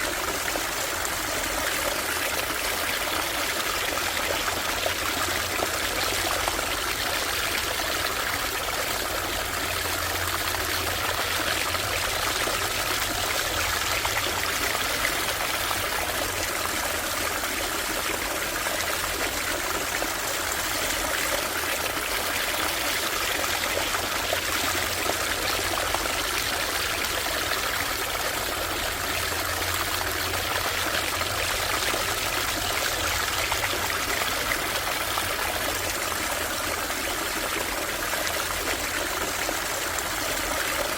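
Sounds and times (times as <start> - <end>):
stream water babbling: 0.0 - 40.9.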